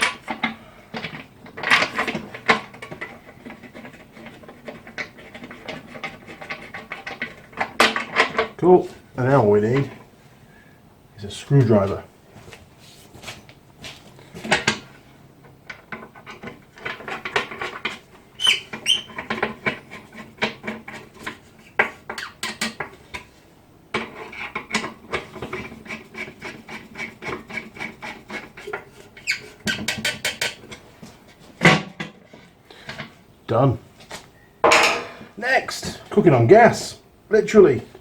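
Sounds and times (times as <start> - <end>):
metal on metal squeaks: 18.4 - 19.5, 28.6 - 30.0.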